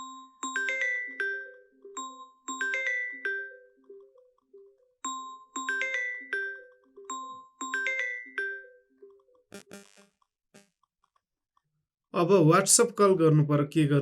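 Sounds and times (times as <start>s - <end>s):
phone ringtone melody: 0.0s - 10.0s.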